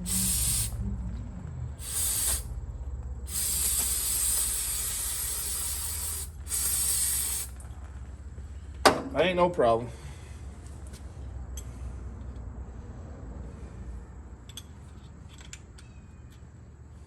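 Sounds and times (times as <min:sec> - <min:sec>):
aerosol spray can hissing: 0:00.0 - 0:00.8, 0:01.8 - 0:02.5, 0:03.3 - 0:07.6
steady low hum: 0:00.0 - 0:15.1.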